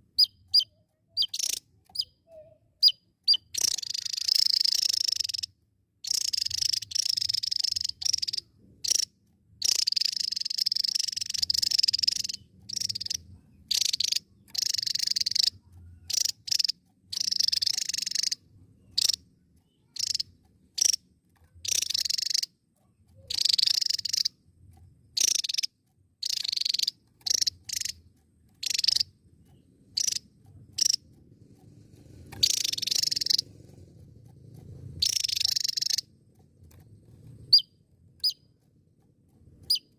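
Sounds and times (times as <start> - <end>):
bird singing buzzy song: 0.0 - 39.9.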